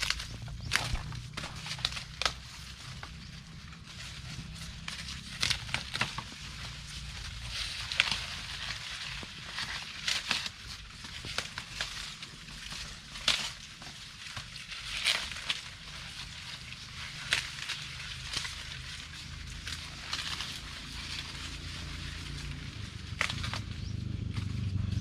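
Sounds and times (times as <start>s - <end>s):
corn stalks snapping: 0.0s - 24.4s
dry corn plants rustling: 0.0s - 25.0s
low steady rumble: 0.0s - 25.0s.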